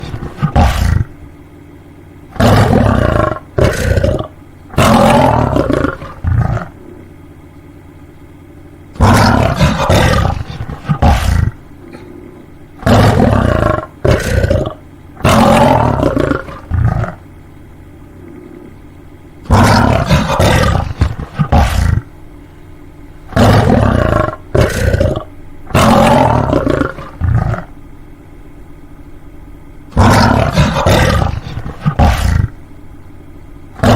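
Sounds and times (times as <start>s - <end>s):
lion grunts: 0.0s - 1.2s, 2.4s - 7.3s, 9.0s - 17.3s, 18.1s - 22.2s, 23.3s - 27.8s, 29.9s - 32.6s
lion roaring: 0.0s - 1.2s, 2.3s - 7.3s, 8.9s - 17.3s, 18.1s - 22.2s, 23.3s - 27.8s, 29.9s - 32.6s
faint steady hum: 0.0s - 33.9s.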